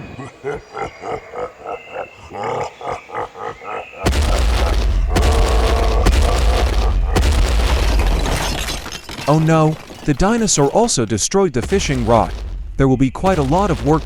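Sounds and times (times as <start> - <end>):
deep rumbling dinosaur roar: 0.0 - 7.9
sharp hits: 4.0 - 8.6, 11.6 - 14.0
boom: 4.1 - 8.7, 11.6 - 14.0.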